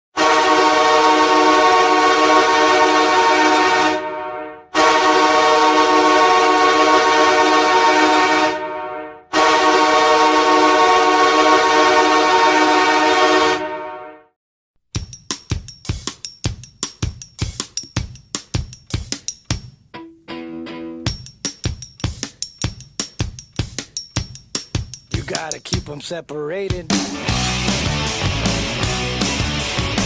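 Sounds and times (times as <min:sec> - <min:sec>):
goal horn blasts: 0:00.2 - 0:14.3.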